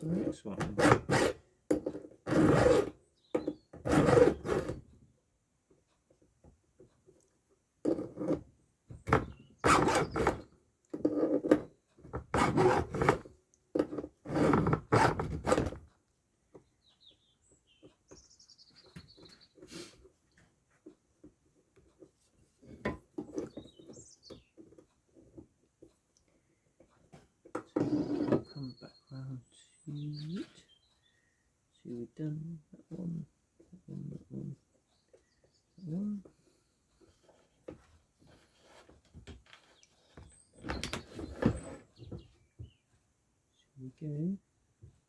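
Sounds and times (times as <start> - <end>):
file rasping on chainsaw chain: 0.0 - 2.9, 3.8 - 4.8, 7.9 - 8.4, 9.6 - 10.4, 12.4 - 15.8, 27.8 - 28.4.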